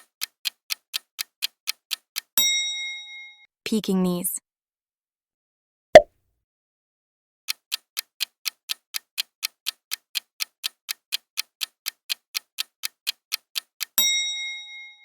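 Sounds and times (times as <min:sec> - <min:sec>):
countdown clock ticking: 0:00.0 - 0:02.6, 0:07.5 - 0:14.6.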